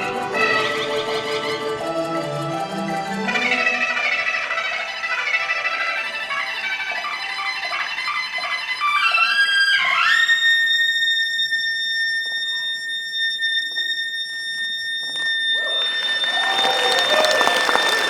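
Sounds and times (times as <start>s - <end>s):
suona playing: 0.0s - 10.1s, 15.1s - 18.0s.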